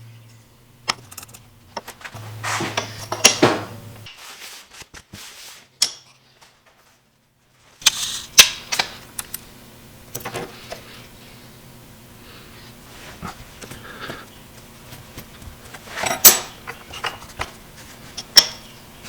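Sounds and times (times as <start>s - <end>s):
scraping strokes on wood: 2.0s - 6.2s.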